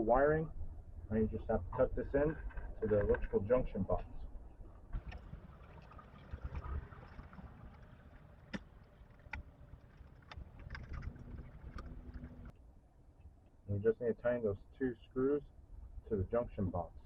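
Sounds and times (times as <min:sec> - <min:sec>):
handling rumble: 0:04.9 - 0:12.5.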